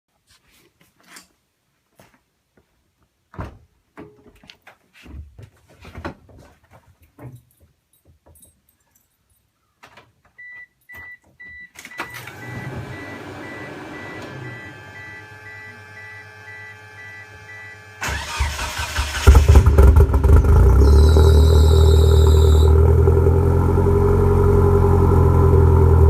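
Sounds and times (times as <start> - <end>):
car warning chime beeping: 10.4 - 19.2, 20.8 - 22.7.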